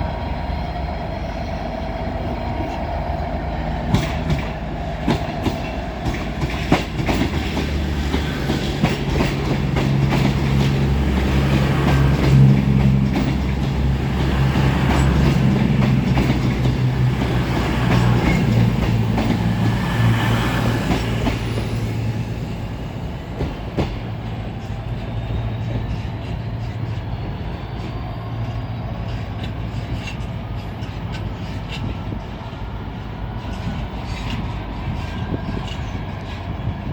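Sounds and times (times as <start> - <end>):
diesel train engine: 0.0 - 36.9
wheels clicking over rail joints: 3.8 - 21.8, 28.9 - 36.9.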